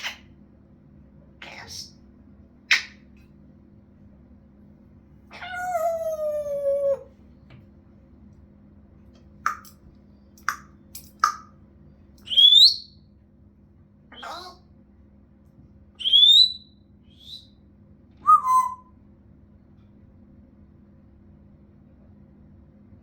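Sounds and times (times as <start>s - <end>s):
parrot calling: 0.0s - 0.3s, 2.7s - 3.0s, 5.3s - 7.1s, 12.2s - 12.9s, 14.1s - 14.6s, 16.0s - 17.4s, 18.2s - 18.9s
parrot rising whistle: 12.3s - 12.9s, 16.0s - 17.5s, 18.2s - 19.0s.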